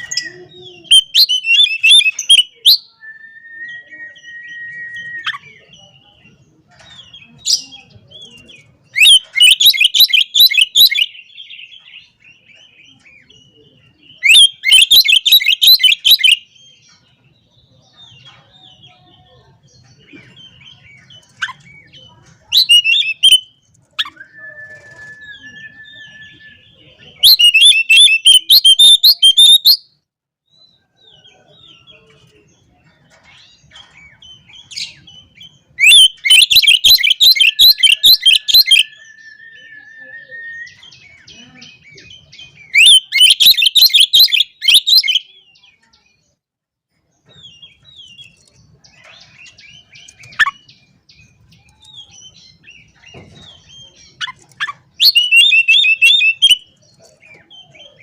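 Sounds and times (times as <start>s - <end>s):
bird chattering song: 0.0s - 46.4s, 47.2s - 58.0s
bird whistles: 0.9s - 5.7s, 24.0s - 29.9s, 35.8s - 41.0s, 42.6s - 45.3s, 54.2s - 56.7s.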